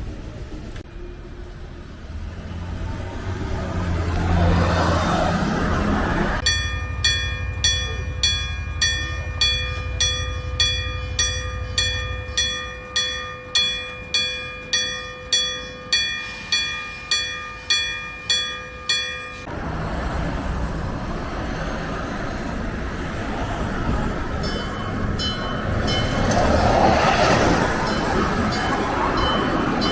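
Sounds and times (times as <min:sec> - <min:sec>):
low rumble: 0:05.6 - 0:12.9
level crossing bell ringing: 0:06.4 - 0:19.5, 0:24.4 - 0:26.8.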